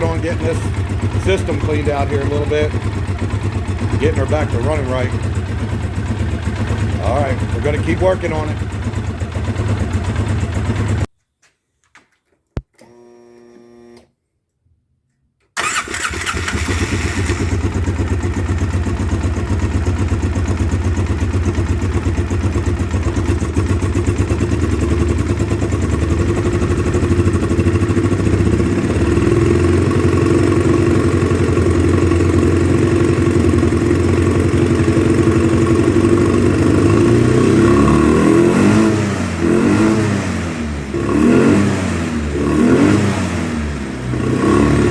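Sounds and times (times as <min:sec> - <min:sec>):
atv engine running rough: 0:00.0 - 0:11.1, 0:15.6 - 0:44.9
engine cranking: 0:15.6 - 0:17.9.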